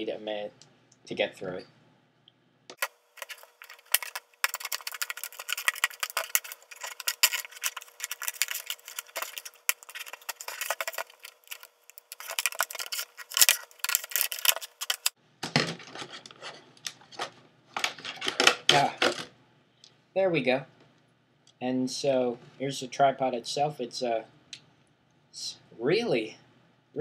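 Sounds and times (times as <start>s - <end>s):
plastic packaging crackling: 2.8s - 15.2s.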